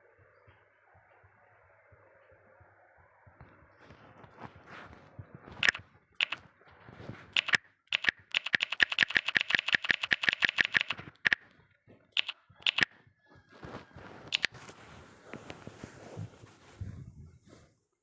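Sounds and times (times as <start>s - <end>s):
sharp clicks: 5.6s - 6.4s, 7.3s - 13.0s, 14.3s - 14.6s.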